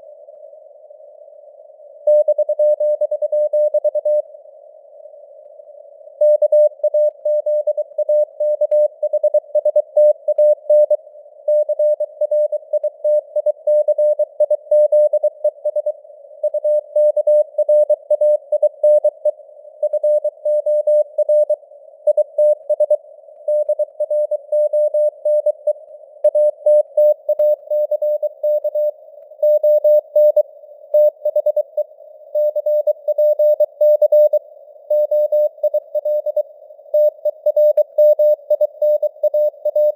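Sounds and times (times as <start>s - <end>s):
morse code beeps: 26.3s - 30.4s, 31.0s - 31.8s, 32.4s - 39.9s.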